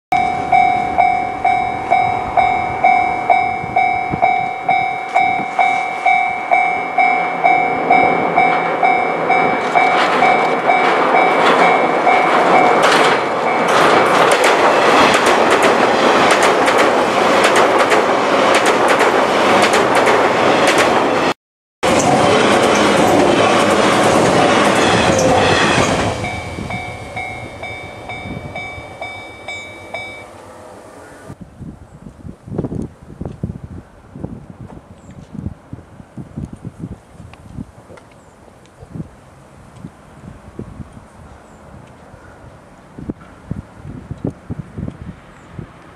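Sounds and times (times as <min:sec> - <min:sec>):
level crossing bell dinging: 0:00.1 - 0:13.9, 0:24.8 - 0:31.1
train wheels clicking over rail joints: 0:05.1 - 0:21.1.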